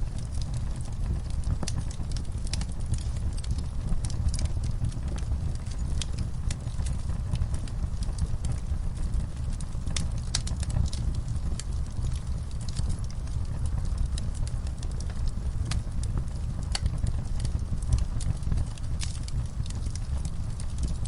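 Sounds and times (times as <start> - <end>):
fire crackling and popping: 0.0 - 21.0
fire flames rumbling: 0.0 - 21.0.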